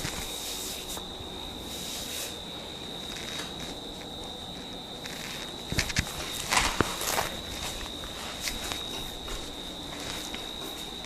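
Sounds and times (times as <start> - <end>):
hands rubbing skin and hair: 3.0 - 11.0.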